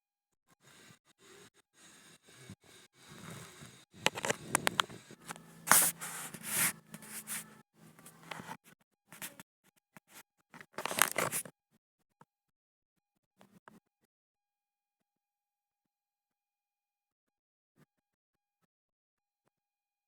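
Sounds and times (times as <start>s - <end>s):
slime being stirred: 5.3s - 7.5s.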